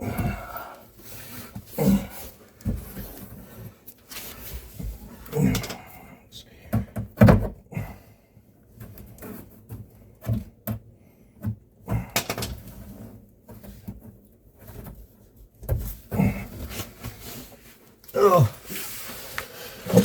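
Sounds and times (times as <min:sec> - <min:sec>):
knocks and scrapes in wooden cabinet: 0:06.7 - 0:07.6, 0:12.2 - 0:17.6.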